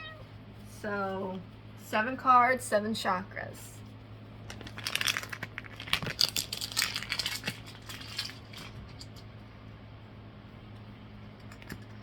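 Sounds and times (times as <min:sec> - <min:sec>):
card stock and packaging crinkling: 0:04.4 - 0:09.2.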